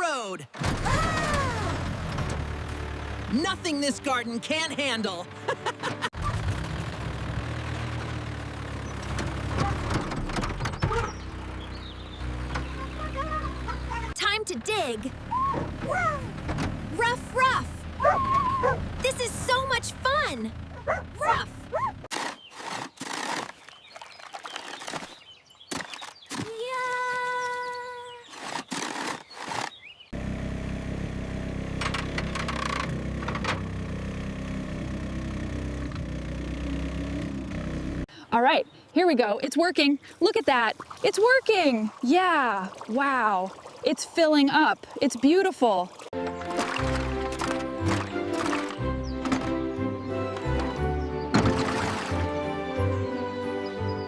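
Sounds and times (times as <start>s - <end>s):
motor running low rumble: 0.8s - 22.1s, 30.1s - 38.1s
diesel engine idling: 1.0s - 22.1s, 30.2s - 38.1s, 46.2s - 51.3s
clattering scraping crashes: 46.2s - 52.4s.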